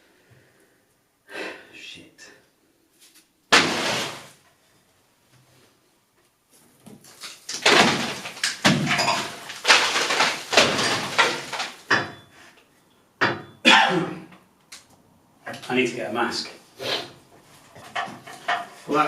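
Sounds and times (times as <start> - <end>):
debris clattering on floor: 3.5 - 4.4, 6.8 - 12.3
plaster crashing down: 3.5 - 4.4, 7.1 - 12.2.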